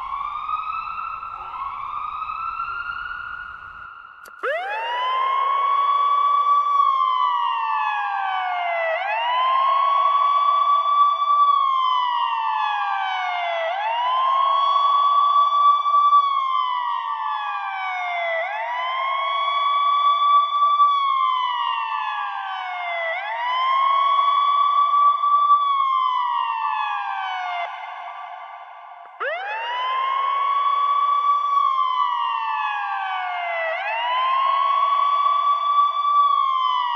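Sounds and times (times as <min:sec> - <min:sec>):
ambulance siren wailing: 0:00.0 - 0:10.0, 0:25.7 - 0:27.8, 0:29.2 - 0:36.9.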